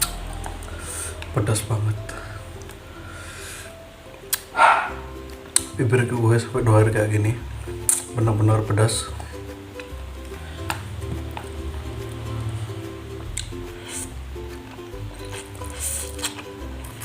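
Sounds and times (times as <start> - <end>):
background music with steady bass: 0.0 - 17.0
wet chewing squelches: 13.2 - 17.0.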